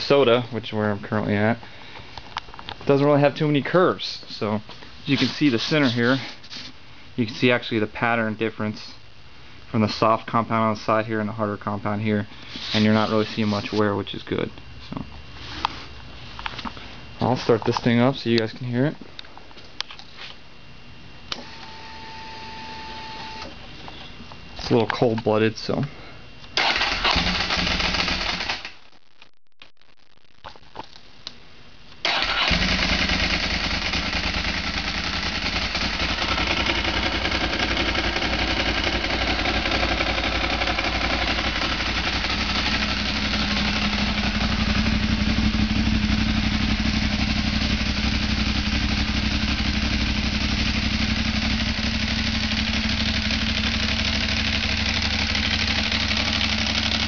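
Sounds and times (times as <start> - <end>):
motorcycle engine idling: 32.4 - 57.0.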